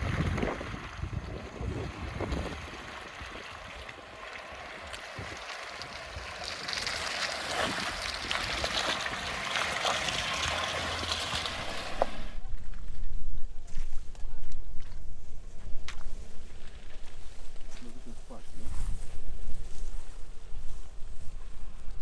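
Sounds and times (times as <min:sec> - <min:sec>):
vehicle splashing through mud: 0:00.0 - 0:12.4.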